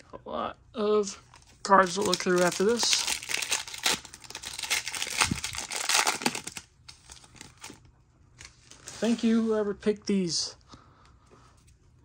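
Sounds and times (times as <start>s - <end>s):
cards rustling: 1.2s - 7.8s
plastic wrapper crinkling: 1.2s - 9.3s.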